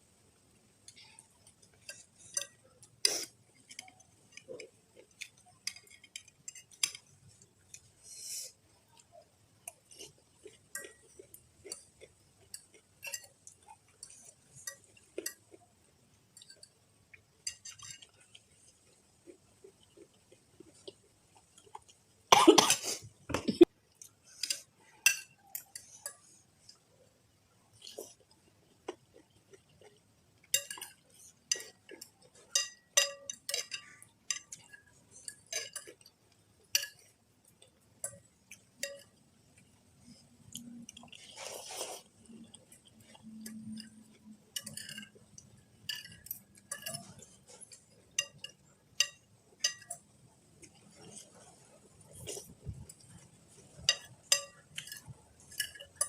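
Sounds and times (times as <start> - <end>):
chewing: 0.9 - 22.0, 27.7 - 56.0
spoon and fork clinking on bowl: 30.5 - 36.1, 44.5 - 45.2, 45.8 - 50.0, 53.8 - 56.0.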